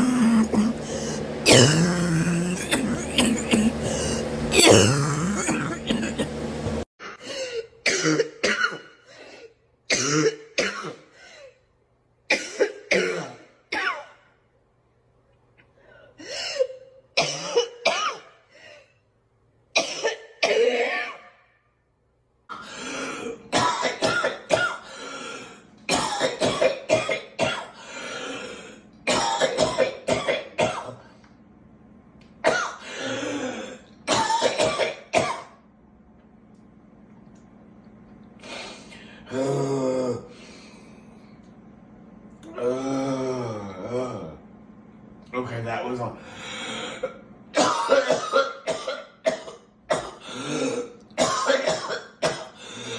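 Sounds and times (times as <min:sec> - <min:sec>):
people coughing: 0:00.0 - 0:06.5, 0:23.6 - 0:24.8, 0:25.9 - 0:27.7, 0:29.1 - 0:31.0, 0:34.1 - 0:35.5, 0:47.6 - 0:52.6.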